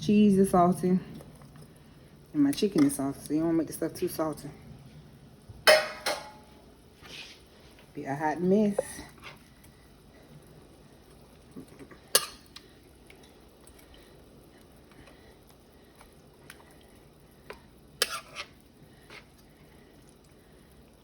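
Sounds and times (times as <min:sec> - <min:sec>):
faint steady background noise: 0:00.0 - 0:21.0.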